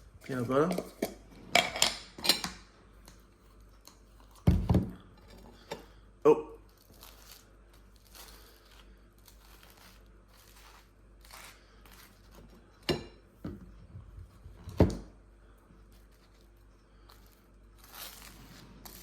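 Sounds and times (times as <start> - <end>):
knife scraping peanut butter: 6.8 - 12.9, 17.1 - 19.0.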